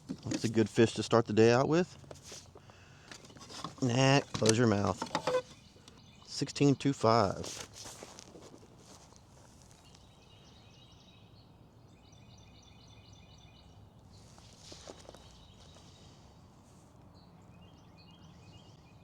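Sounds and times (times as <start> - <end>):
soft rustle: 1.9 - 5.9, 7.2 - 10.3, 14.0 - 17.2
bird chirping: 2.7 - 7.4, 9.6 - 16.3, 17.1 - 19.0.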